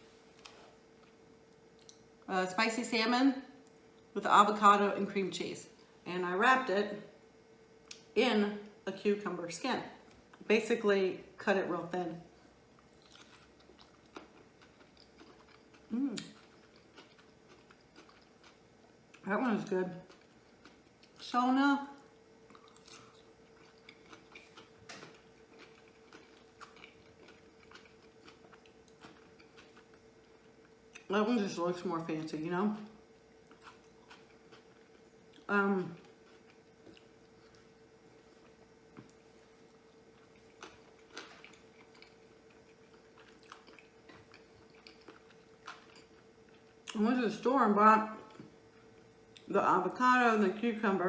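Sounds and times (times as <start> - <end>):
faint steady hum: 0.0 - 51.0
chewing mouth clicks and smacks: 1.8 - 2.1, 13.0 - 18.6, 22.5 - 30.0
close-up chewing: 12.7 - 19.2, 19.9 - 21.3, 22.0 - 31.1, 33.1 - 47.0.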